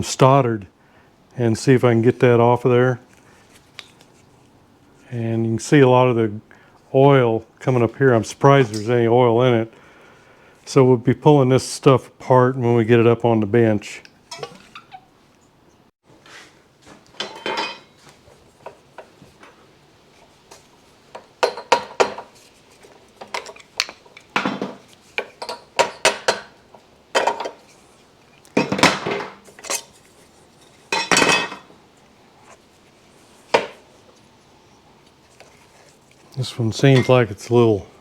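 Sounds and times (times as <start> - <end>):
metal parts and tools clanking: 14.3 - 15.1, 17.2 - 18.0.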